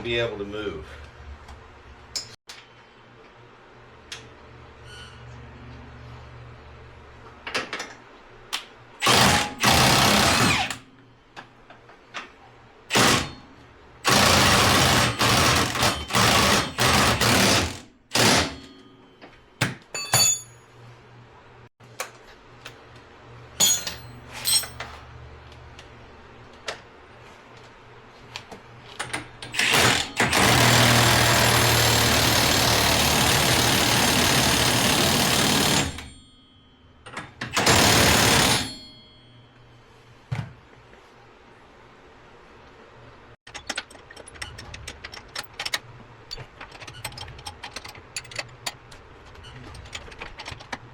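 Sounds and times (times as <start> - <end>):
impact wrench running: 9.0 - 10.8, 12.9 - 13.4, 14.0 - 18.6, 29.6 - 36.1, 37.5 - 38.8
tool clicks and clinks: 14.1 - 20.7, 23.6 - 25.0.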